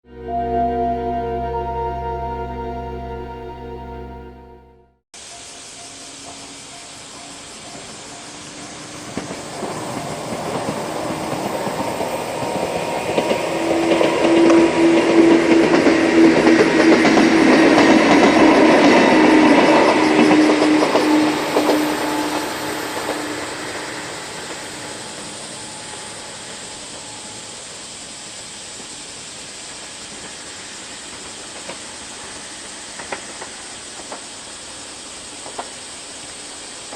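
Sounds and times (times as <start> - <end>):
crossing warning bell ringing: 0.1 - 13.3, 16.6 - 27.7
electric train passing: 0.1 - 36.8
faint steady hiss: 5.2 - 9.4.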